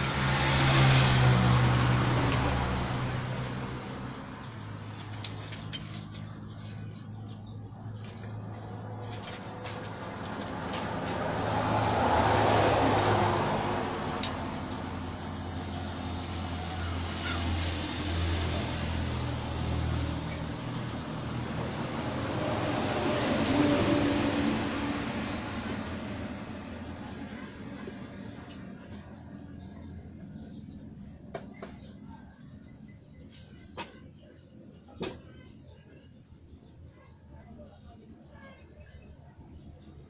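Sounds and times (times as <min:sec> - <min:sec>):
vehicle engine humming: 0:00.0 - 0:40.0.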